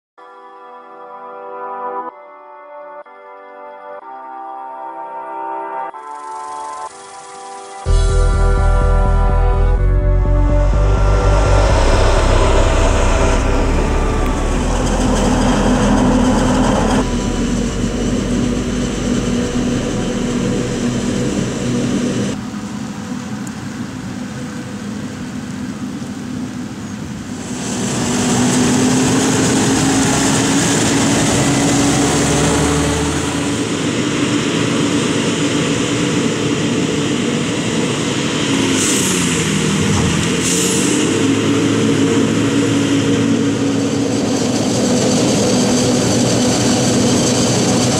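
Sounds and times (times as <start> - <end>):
tractor diesel engines: 10.1 - 22.8, 27.1 - 47.9.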